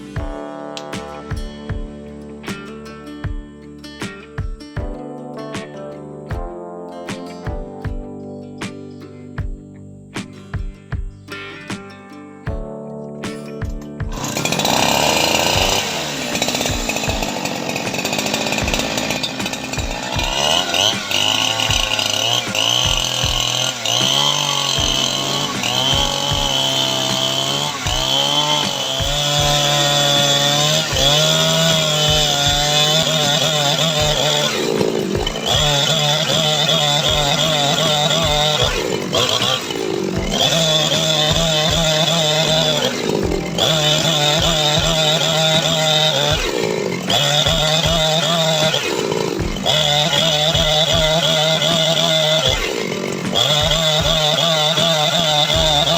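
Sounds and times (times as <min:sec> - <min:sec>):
chainsaw cutting wood: 0:14.1 - 0:55.9.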